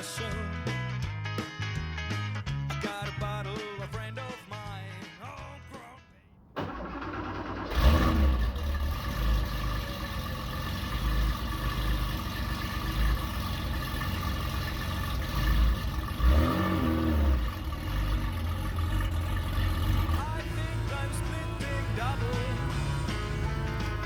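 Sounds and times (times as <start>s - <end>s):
car engine revving: 6.2s - 24.0s.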